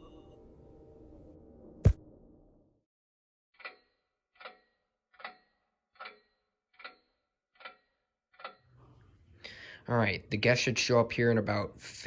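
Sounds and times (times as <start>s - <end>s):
ringing ticks: 3.6s - 8.8s.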